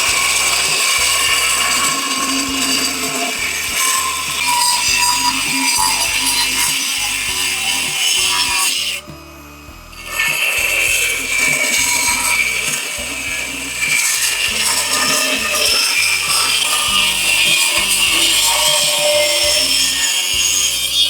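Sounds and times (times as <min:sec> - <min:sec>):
background music: 0:00.0 - 0:21.0
tool scraping and sawing: 0:00.0 - 0:21.0.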